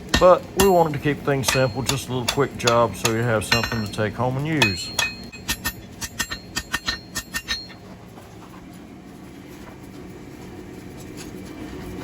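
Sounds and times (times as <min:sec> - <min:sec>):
steady low hum: 0:00.0 - 0:12.0
hammer ringing on steel bar: 0:00.1 - 0:07.8.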